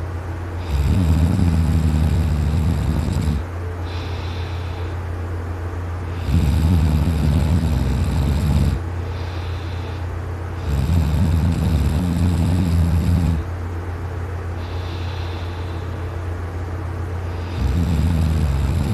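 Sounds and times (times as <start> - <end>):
steady low hum: 0.0 - 18.9
man snoring loudly: 0.6 - 4.2, 6.1 - 8.8, 10.6 - 13.5, 17.3 - 18.9.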